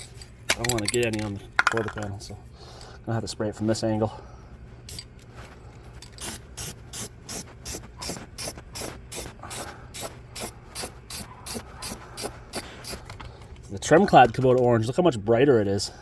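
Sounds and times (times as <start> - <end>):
aerosol spray bursts: 6.2 - 13.0.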